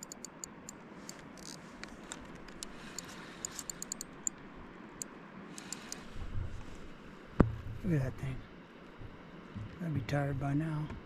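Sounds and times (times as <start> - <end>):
fishing reel clicks: 0.0 - 0.7, 2.6 - 4.4
hiss of water and wind: 0.0 - 11.0.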